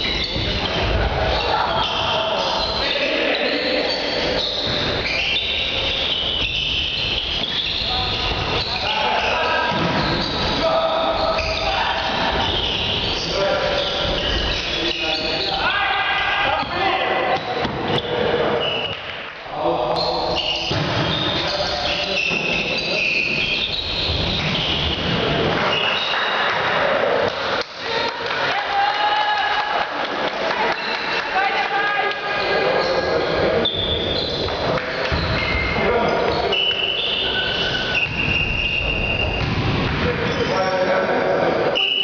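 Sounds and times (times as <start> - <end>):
sneakers squeaking on court: 0.0 - 15.6, 20.0 - 26.4, 32.4 - 40.5
players' voices: 0.0 - 42.0.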